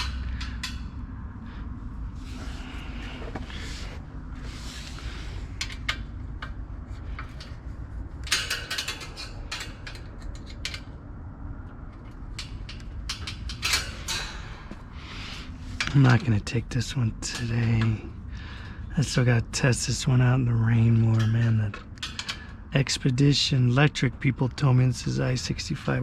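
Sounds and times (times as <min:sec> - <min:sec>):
steady low hum: 0:00.0 - 0:26.0
metal clicks and rattles: 0:05.5 - 0:14.6, 0:21.1 - 0:22.6.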